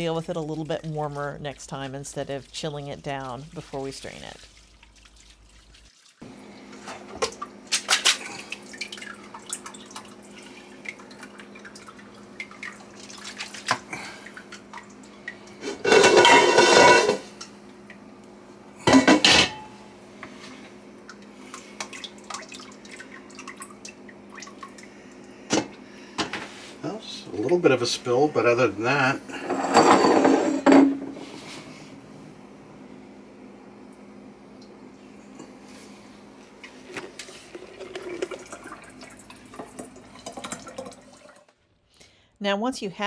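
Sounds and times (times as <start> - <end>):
liquid splashing: 0.0 - 6.2, 7.2 - 15.6, 21.1 - 25.2
faint steady hum: 0.0 - 43.0
dishes and utensils clinking: 15.6 - 17.4, 18.9 - 19.8, 29.3 - 31.2.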